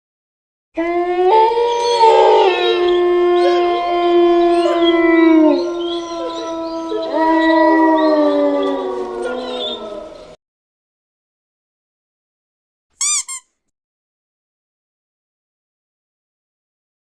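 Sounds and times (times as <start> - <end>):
dogs howling together: 0.8 - 10.4.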